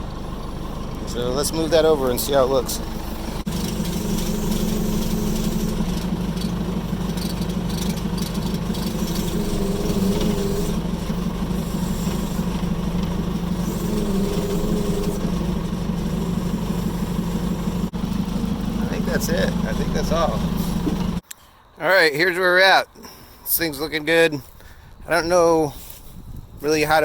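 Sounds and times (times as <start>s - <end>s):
crawler dozer engine running: 0.0s - 21.2s
wavering whine: 0.0s - 21.2s.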